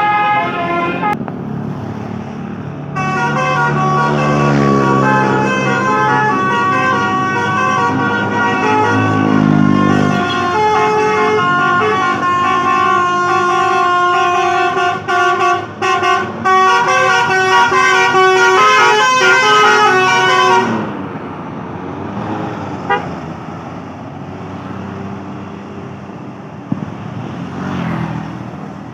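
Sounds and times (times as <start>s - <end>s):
multi-note bus horns: 0.0s - 1.2s, 2.8s - 21.0s, 22.8s - 23.3s
bus engine rumble: 0.0s - 28.9s.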